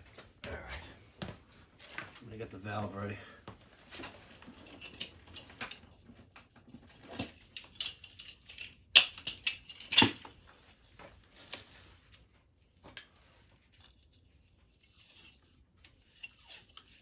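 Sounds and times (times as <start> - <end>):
tools and fittings clicking and knocking: 4.4 - 10.5, 12.8 - 17.0.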